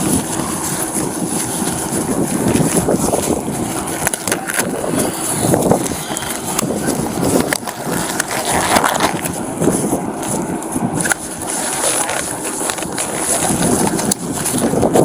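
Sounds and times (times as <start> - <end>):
clothing rustling on microphone: 0.0 - 15.0
handling clicks and knocks: 3.8 - 4.8, 5.7 - 9.4, 11.0 - 15.0.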